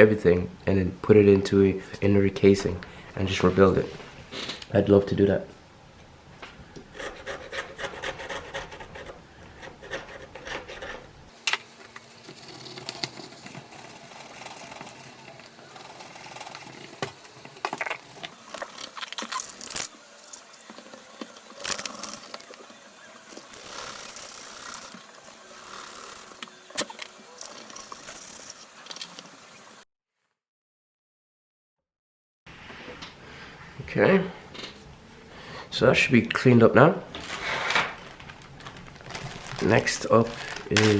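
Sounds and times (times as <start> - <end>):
tool scraping a frame: 6.9 - 11.1.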